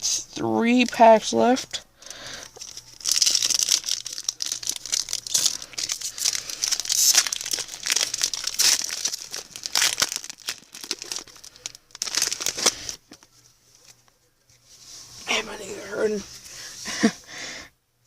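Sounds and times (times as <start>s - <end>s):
foil wrapper crinkling and tearing: 2.0s - 14.0s.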